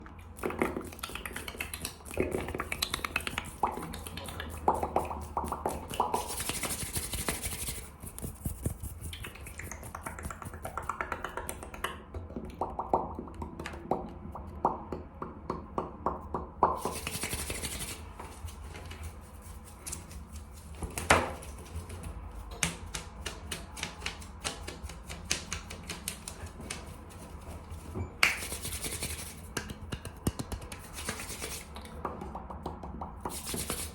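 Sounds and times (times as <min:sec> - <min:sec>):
hands rubbing together: 0:01.0 - 0:11.6, 0:16.8 - 0:20.8, 0:21.4 - 0:32.0, 0:33.1 - 0:33.9
finger snap: 0:28.2 - 0:28.5.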